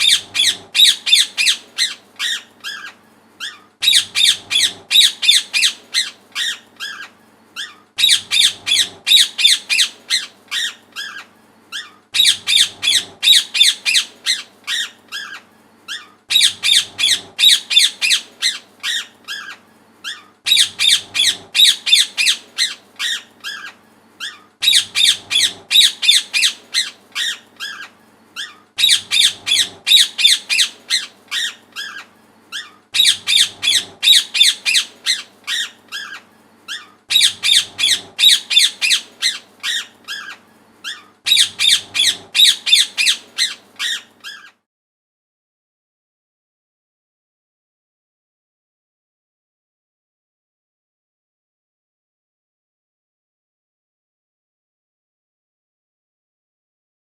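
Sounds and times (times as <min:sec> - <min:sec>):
parrot shrill chirps: 0:00.0 - 0:44.6.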